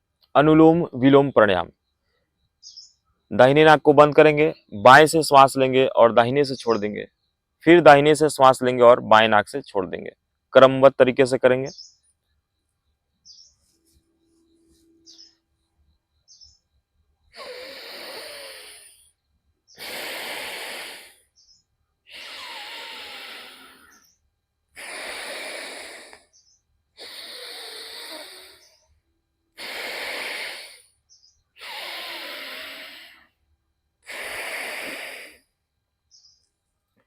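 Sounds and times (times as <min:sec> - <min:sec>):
hissing breaths through nose: 0:17.3 - 0:21.3, 0:22.1 - 0:24.2, 0:24.8 - 0:26.4, 0:27.0 - 0:28.8, 0:29.5 - 0:31.0, 0:31.6 - 0:33.4, 0:34.0 - 0:35.5.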